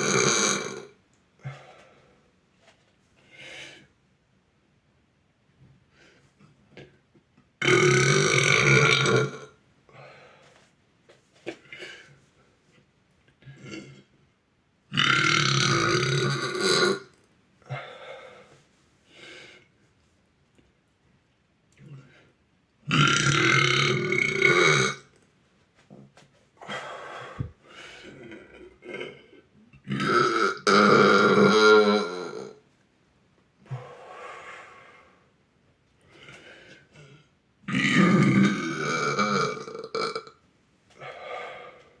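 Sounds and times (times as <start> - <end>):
boy burping loudly: 0.0 - 1.0, 7.6 - 9.6, 14.9 - 17.1, 22.9 - 25.1, 28.2 - 32.6, 37.7 - 40.4.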